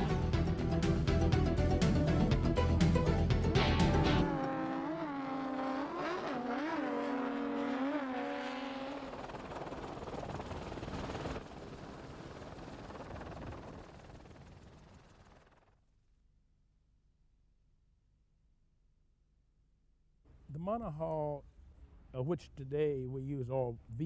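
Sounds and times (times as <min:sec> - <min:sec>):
music: 0:00.0 - 0:04.3.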